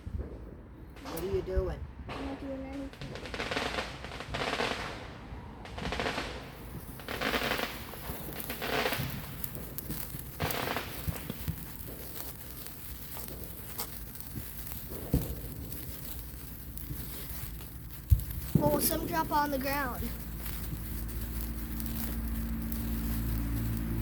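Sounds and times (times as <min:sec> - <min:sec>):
fireworks crackling pops: 0:00.0 - 0:24.0
fireworks fizzing hisses: 0:05.7 - 0:24.0.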